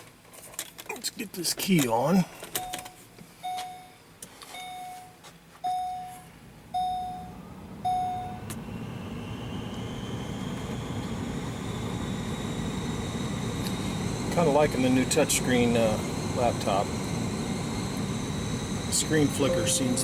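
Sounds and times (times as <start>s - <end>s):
dashboard warning chime dinging: 2.6s - 8.5s, 19.1s - 20.0s
heater blower fan whine: 3.4s - 20.0s.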